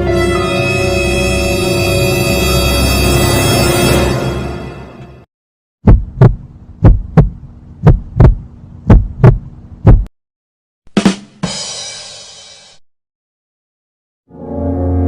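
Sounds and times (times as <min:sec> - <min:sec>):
heartbeat thumps: 0:05.8 - 0:10.1.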